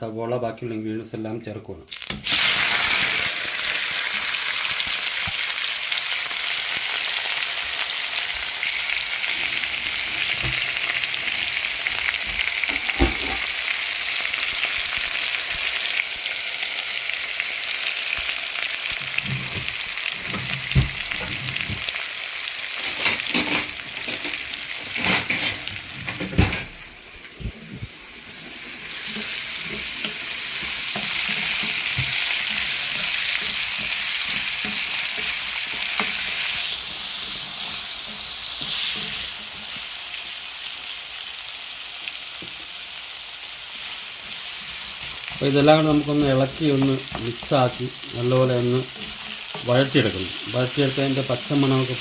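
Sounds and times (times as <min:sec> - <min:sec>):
onions sizzling in hot oil: 0:01.9 - 0:52.0.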